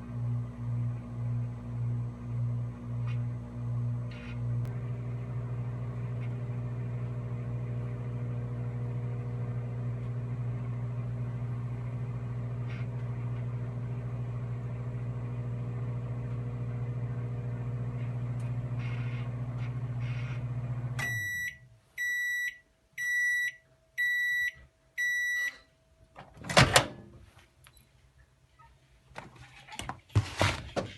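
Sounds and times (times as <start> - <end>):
microwave oven humming: 0.0 - 25.4
microwave door clunk opening: 26.2 - 27.1.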